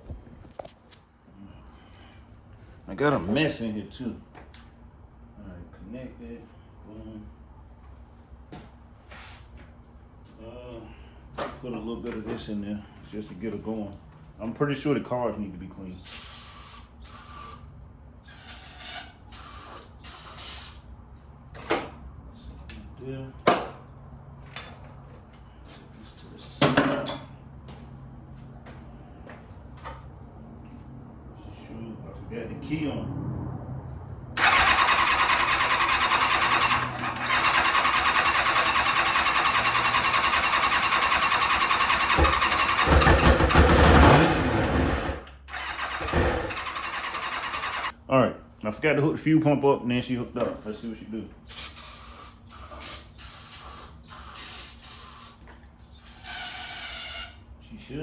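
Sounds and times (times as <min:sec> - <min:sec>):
motorcycle engine cranking: 0:34.4 - 0:47.9.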